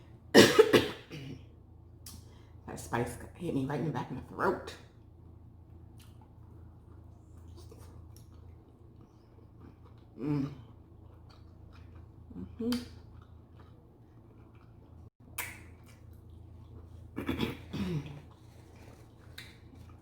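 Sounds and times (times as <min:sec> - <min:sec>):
steady low hum: 0:00.0 - 0:20.0
person making throat sounds: 0:10.2 - 0:10.7, 0:17.2 - 0:18.2.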